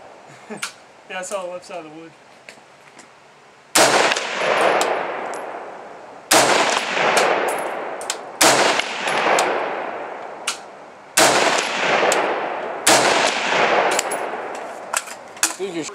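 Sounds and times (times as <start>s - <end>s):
rifle shots: 3.7s - 5.7s, 6.3s - 14.6s.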